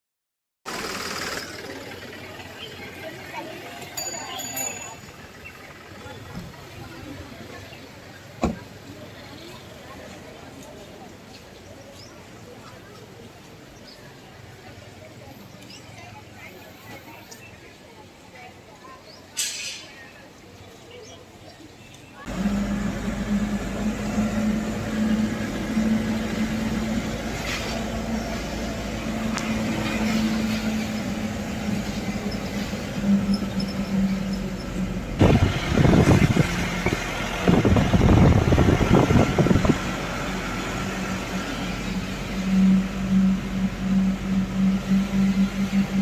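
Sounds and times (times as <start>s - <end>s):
vehicle engine running: 0.7s - 4.1s, 22.3s - 46.0s.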